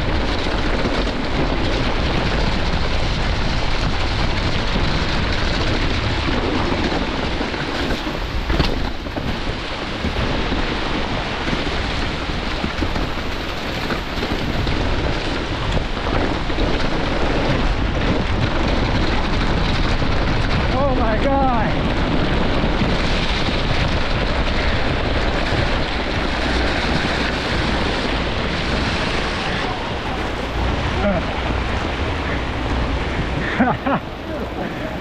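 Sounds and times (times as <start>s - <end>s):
bike tyres on wet trail: 0.0s - 35.0s
wind rushing on camera: 0.0s - 35.0s.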